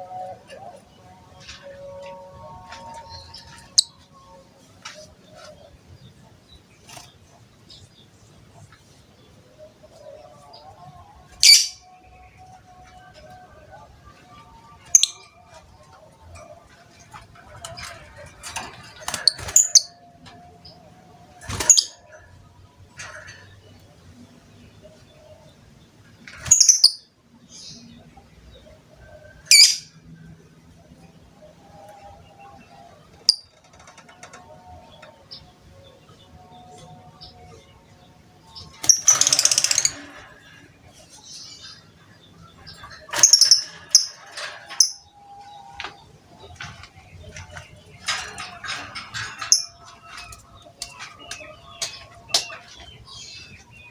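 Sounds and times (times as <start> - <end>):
lovebird chirping: 38.5 - 40.1
knocks and rustles: 42.4 - 53.7.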